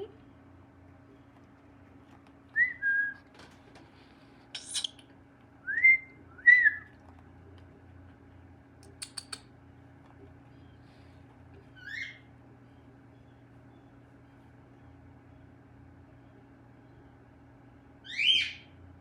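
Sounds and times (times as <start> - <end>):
faint steady hum: 0.0 - 19.0
cockatiel whistled chirps: 2.6 - 3.2, 5.7 - 6.9, 18.0 - 18.7
sharp clicks: 8.8 - 9.5.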